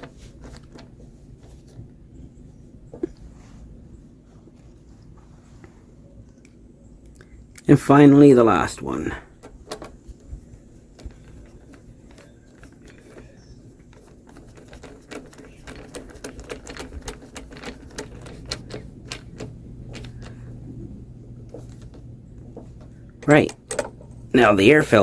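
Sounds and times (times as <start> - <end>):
hand ratchet clicking: 23.3 - 24.2.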